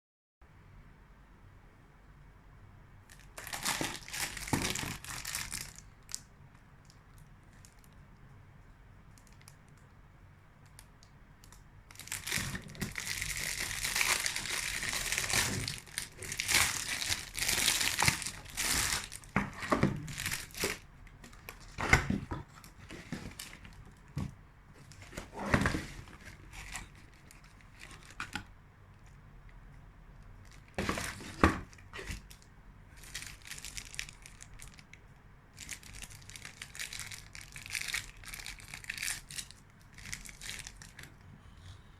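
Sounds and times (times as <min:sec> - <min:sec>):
candy wrapping crinkling: 0:03.1 - 0:06.3, 0:11.5 - 0:23.8, 0:33.0 - 0:35.0, 0:35.6 - 0:41.1.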